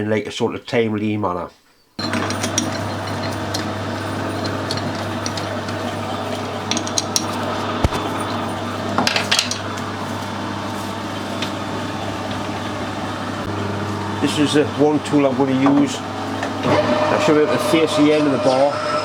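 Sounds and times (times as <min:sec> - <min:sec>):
metal tools clinking: 0:02.0 - 0:09.9
steady machine hum: 0:02.0 - 0:19.0.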